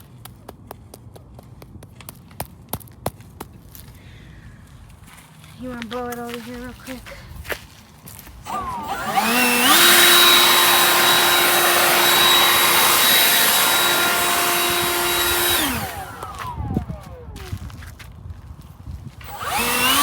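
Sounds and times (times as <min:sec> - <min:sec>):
leaf blower running: 0:08.2 - 0:20.0.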